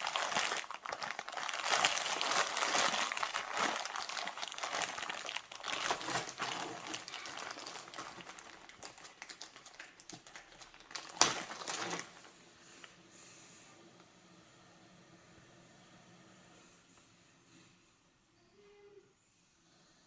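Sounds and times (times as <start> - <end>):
packaging crinkling: 0.0 - 12.3.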